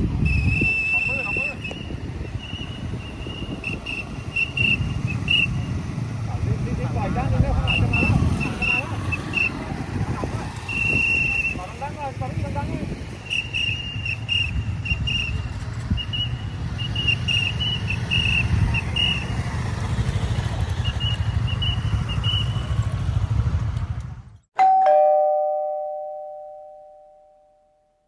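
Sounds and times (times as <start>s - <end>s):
two-tone doorbell chime: 24.6s - 28.0s.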